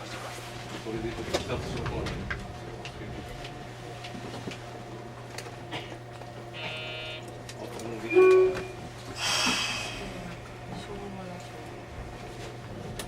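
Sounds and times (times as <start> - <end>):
low electrical hum: 0.0 - 13.0
short loud tone: 6.6 - 7.3, 8.1 - 8.8
burst of hiss: 9.2 - 10.1.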